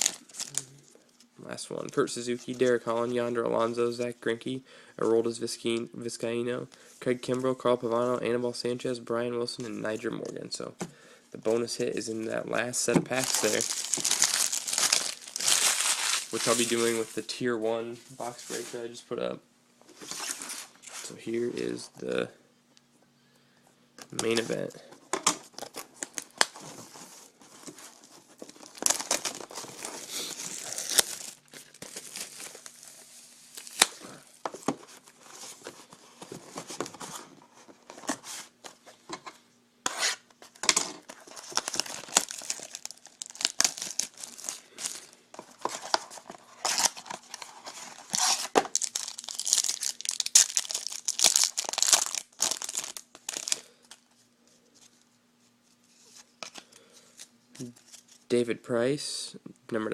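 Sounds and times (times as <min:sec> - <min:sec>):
wrapping torn and crinkled: 0:00.0 - 0:00.8, 0:13.1 - 0:17.2, 0:27.9 - 0:34.4, 0:41.2 - 0:54.2.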